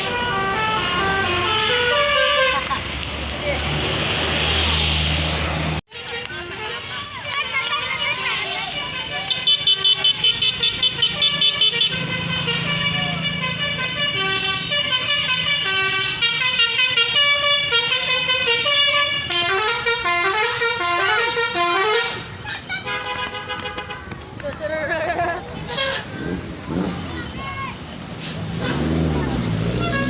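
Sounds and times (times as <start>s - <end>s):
bus musical horn playing a tune: 0.0s - 2.6s, 5.9s - 7.9s, 8.8s - 24.0s, 29.6s - 30.0s.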